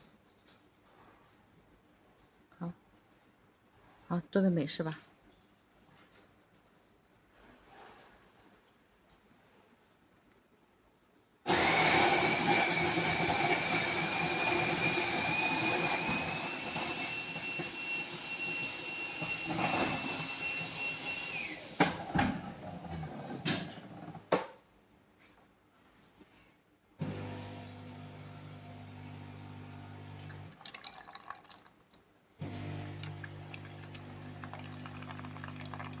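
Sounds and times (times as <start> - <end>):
coffee grinder whining: 11.5 - 22.1, 27.0 - 31.3, 32.4 - 36.0.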